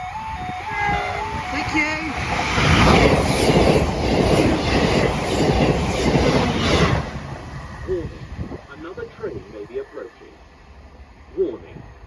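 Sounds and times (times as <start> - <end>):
train wheels rushing on rails: 0.0 - 12.0.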